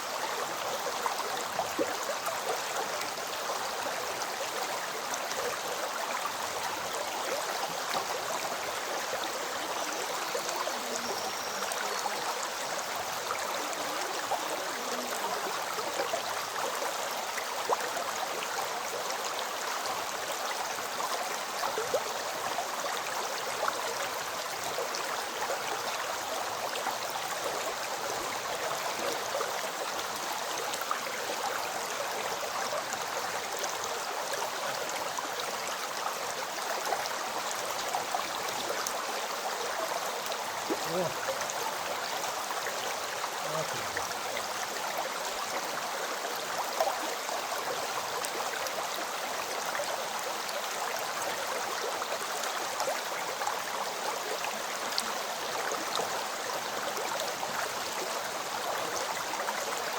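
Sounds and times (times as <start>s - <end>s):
river water rushing: 0.0s - 59.9s
water splashes: 40.3s - 42.0s.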